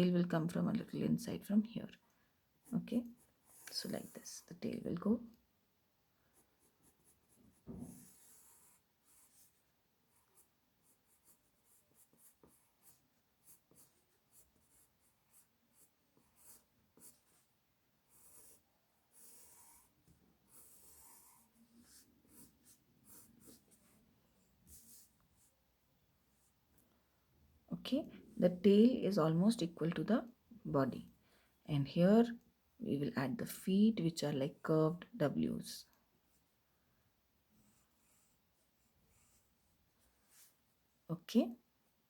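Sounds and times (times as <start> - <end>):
pencil scratching on paper: 6.3 - 25.6, 37.6 - 40.6
soft thump: 7.6 - 8.1.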